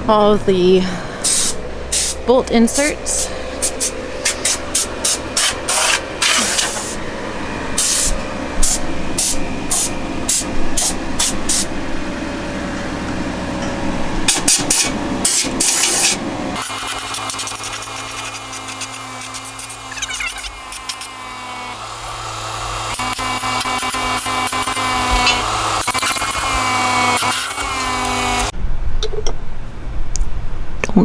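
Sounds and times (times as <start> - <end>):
steady low hum: 0.0 - 31.0
air blow gun blasts: 1.2 - 7.0, 7.8 - 11.7, 14.2 - 21.2.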